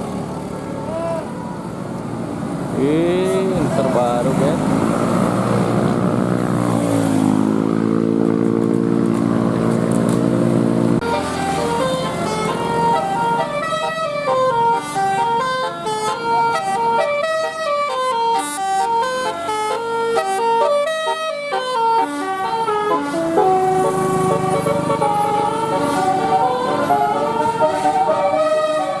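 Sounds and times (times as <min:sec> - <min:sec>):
bus horn playing a tune: 0:11.0 - 0:29.0.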